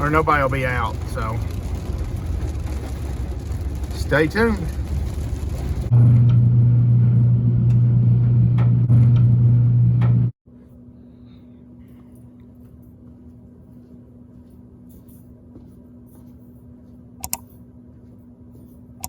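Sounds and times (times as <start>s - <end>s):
car road and engine noise: 0.0s - 6.3s
steady low hum: 0.0s - 19.0s.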